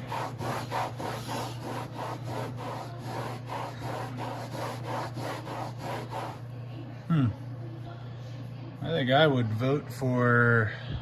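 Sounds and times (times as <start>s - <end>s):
scrubbing textured boat deck: 0.0s - 6.4s.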